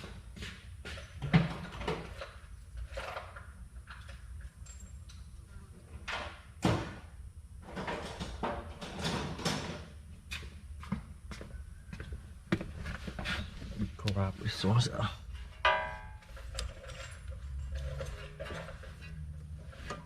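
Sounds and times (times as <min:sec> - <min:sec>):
hand tools scraping metal: 0:15.3 - 0:20.0.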